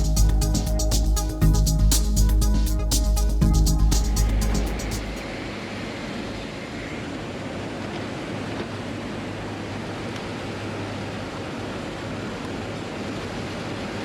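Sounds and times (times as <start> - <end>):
electronic music: 0.0 - 5.4
low hum: 0.0 - 7.3.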